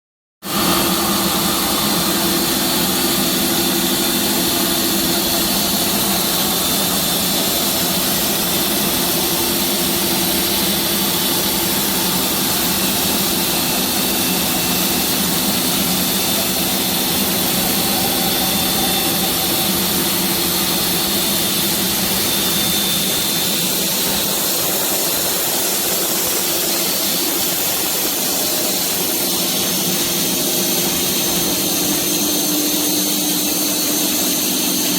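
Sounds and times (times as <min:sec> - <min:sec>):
saw machine humming: 0:00.5 - 0:34.9.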